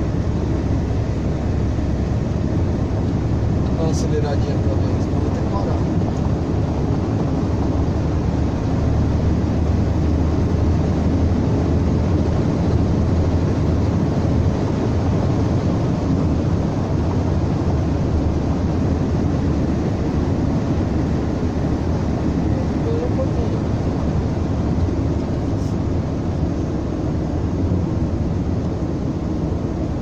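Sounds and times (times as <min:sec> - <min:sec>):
road noise: 0:00.0 - 0:30.0
van engine drone: 0:00.0 - 0:30.0.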